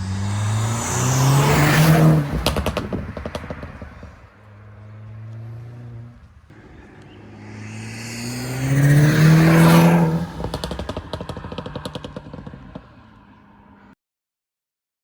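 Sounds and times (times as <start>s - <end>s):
car engine accelerating: 0.0s - 13.9s
exhaust pops and crackles: 0.6s - 4.4s, 7.8s - 13.4s.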